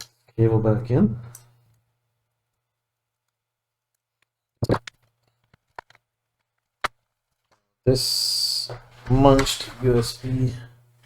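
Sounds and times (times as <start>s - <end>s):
plastic parts clicking and knocking: 4.2s - 7.7s.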